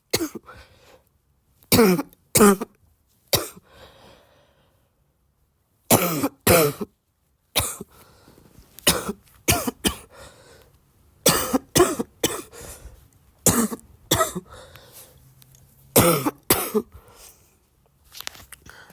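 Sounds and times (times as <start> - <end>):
person coughing wetly: 0.1 - 0.5, 1.7 - 3.6, 5.9 - 6.9, 7.6 - 7.9, 8.8 - 10.1, 11.2 - 12.6, 13.4 - 14.5, 16.0 - 17.0.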